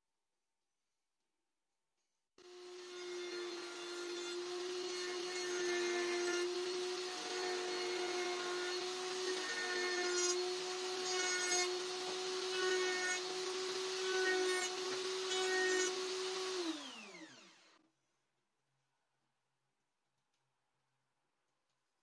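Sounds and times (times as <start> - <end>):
small power tool motor: 2.4 - 17.8.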